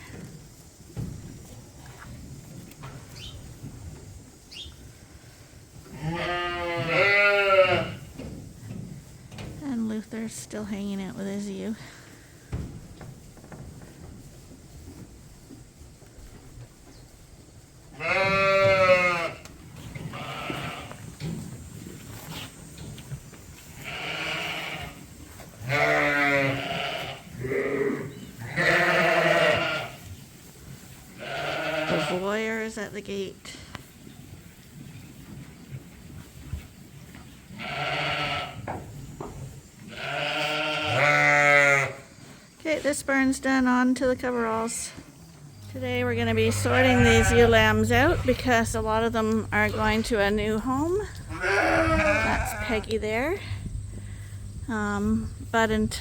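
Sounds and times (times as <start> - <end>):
sheep bleating: 6.0 - 8.0, 18.0 - 19.4, 23.8 - 25.0, 25.7 - 30.0, 31.2 - 32.2, 37.6 - 38.6, 39.9 - 42.0, 46.3 - 47.8, 51.3 - 52.9.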